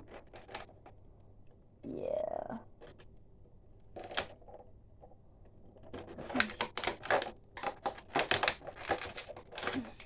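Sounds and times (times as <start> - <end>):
plastic packaging crackling: 6.2 - 10.0.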